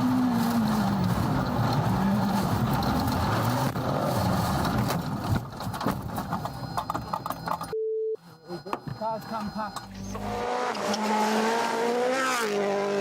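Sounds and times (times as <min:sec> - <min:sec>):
rally car engine revving: 0:09.9 - 0:13.0.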